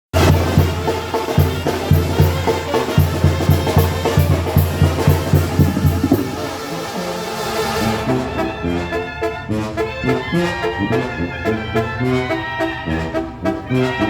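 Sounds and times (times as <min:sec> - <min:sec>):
brass band music: 0:00.1 - 0:14.0
bass drum hits: 0:01.5 - 0:06.7.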